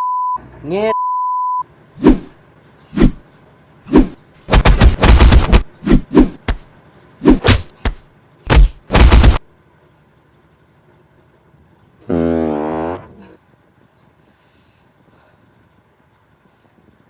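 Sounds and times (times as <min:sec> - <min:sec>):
gunshots: 0:03.9 - 0:06.6, 0:07.2 - 0:09.4
rapid gunfire bursts: 0:04.5 - 0:05.7, 0:07.5 - 0:09.4.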